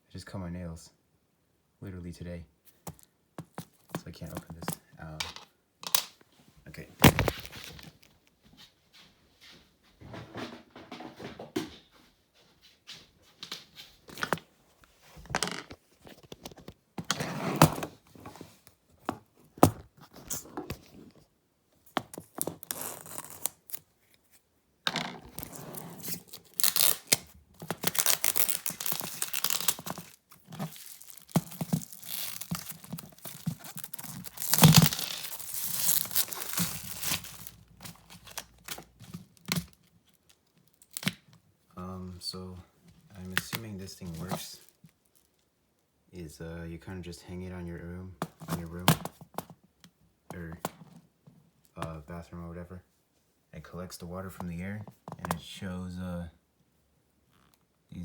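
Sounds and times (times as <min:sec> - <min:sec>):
packaging tearing and crinkling: 0:07.0 - 0:07.9, 0:22.2 - 0:23.8, 0:25.3 - 0:41.2.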